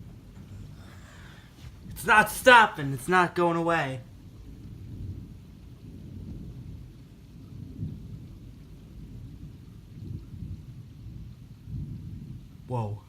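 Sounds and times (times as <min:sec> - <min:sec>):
low rumbling thunder: 0:00.0 - 0:03.4, 0:04.0 - 0:13.0.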